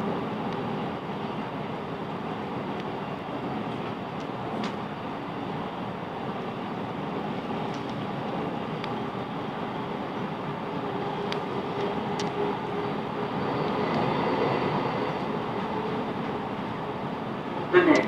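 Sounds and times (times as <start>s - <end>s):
train wheels rumbling: 7.1s - 18.0s.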